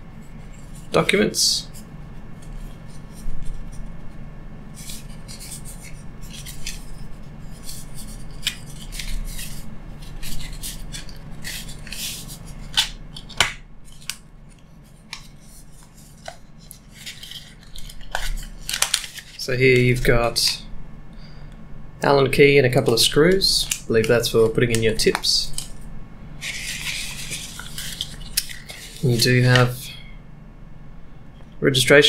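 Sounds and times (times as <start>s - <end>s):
paper rustling and crinkling: 2.4s - 20.5s, 26.4s - 29.7s.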